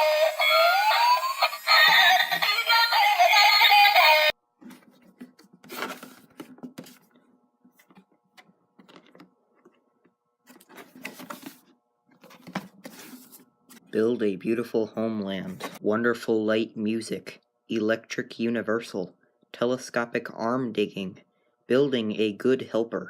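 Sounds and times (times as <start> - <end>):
tinny electronic toy song: 0.0 - 4.3.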